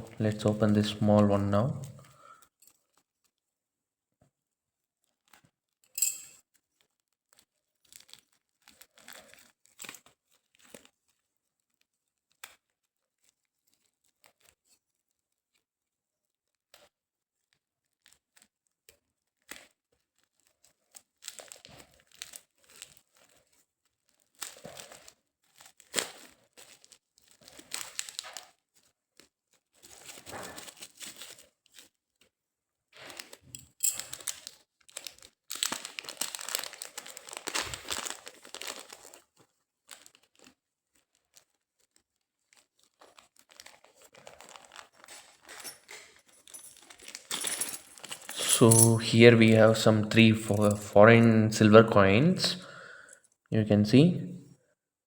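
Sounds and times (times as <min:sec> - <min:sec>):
package wrapping tearing and crinkling: 0:07.8 - 0:10.9, 0:19.4 - 0:23.5, 0:24.1 - 0:31.9, 0:33.0 - 0:48.7.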